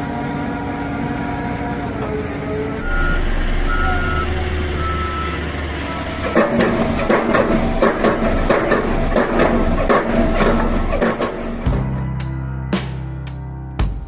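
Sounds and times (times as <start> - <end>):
diesel engine low rumble: 0.0 - 12.8
warning alarm high beeps: 2.8 - 6.4
rhythmic music with a beat: 6.3 - 14.0.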